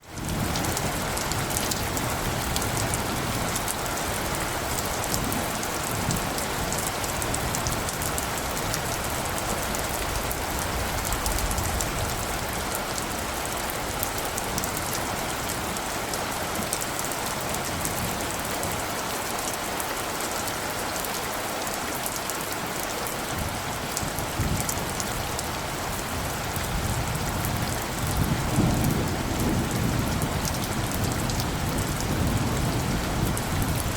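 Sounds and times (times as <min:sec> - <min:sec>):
rain hiss and pattering: 0:00.0 - 0:33.9
wind gusts: 0:00.0 - 0:33.9.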